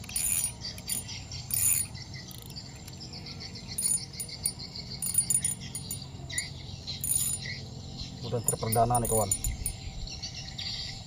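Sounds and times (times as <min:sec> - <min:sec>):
fishing reel clicking: 0:00.0 - 0:03.0, 0:03.8 - 0:07.5
insects chirping: 0:00.0 - 0:11.0.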